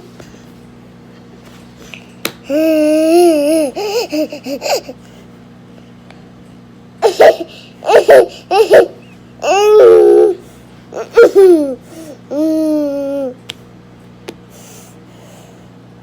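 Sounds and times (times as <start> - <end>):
baby babbling: 2.5 - 5.0, 7.0 - 10.4, 11.0 - 13.4
baby laughing: 2.5 - 5.0, 7.0 - 10.4, 11.0 - 13.4.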